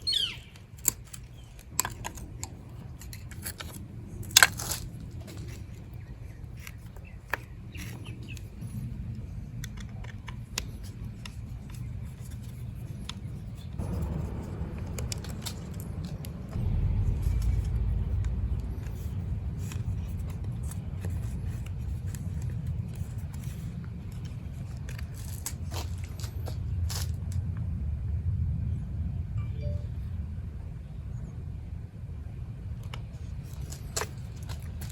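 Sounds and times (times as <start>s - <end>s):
steady low rumble: 0.0s - 34.9s.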